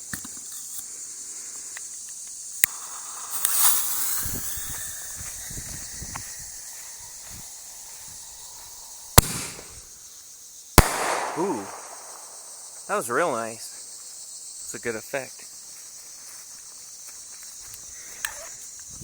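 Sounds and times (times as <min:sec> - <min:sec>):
insects hissing: 0:00.0 - 0:19.0
firework mortar launch thump: 0:02.6 - 0:09.8, 0:10.8 - 0:12.6.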